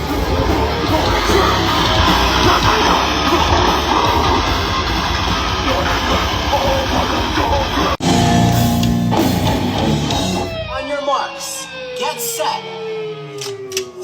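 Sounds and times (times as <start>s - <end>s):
held guitar chords: 0.0s - 10.9s
rock music with electric guitar: 0.0s - 11.8s.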